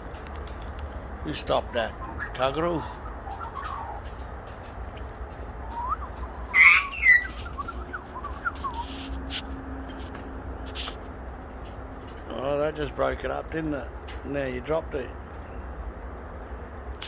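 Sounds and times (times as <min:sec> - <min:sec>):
sharp clicks: 0:00.1 - 0:00.9
kookaburras chirping: 0:01.7 - 0:04.3, 0:04.9 - 0:09.0
kookaburras harsh squawks: 0:01.8 - 0:04.0, 0:06.3 - 0:08.0.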